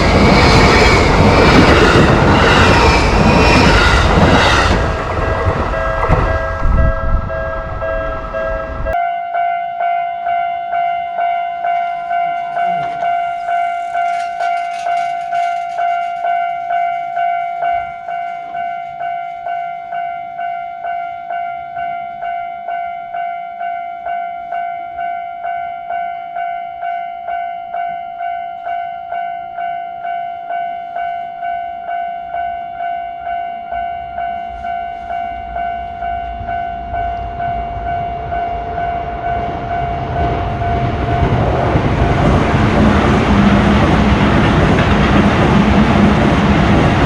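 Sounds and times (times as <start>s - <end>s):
train running past: 0.0s - 9.0s, 10.8s - 22.0s, 30.0s - 47.0s
level crossing warning bell: 0.0s - 47.0s.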